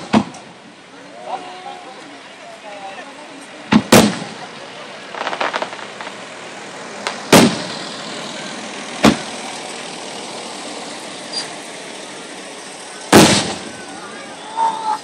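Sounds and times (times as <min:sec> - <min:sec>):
fireworks bangs: 0:00.0 - 0:00.8, 0:03.6 - 0:09.9, 0:12.3 - 0:15.0
background hiss: 0:00.0 - 0:15.0.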